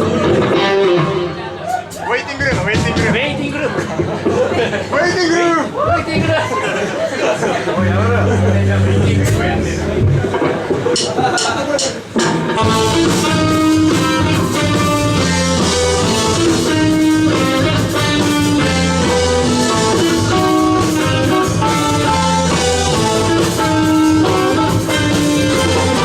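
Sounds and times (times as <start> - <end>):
bass: 7.7 - 11.2, 12.6 - 26.0
drum kit: 7.7 - 26.0
electric guitar melody: 7.8 - 10.8, 12.6 - 26.0.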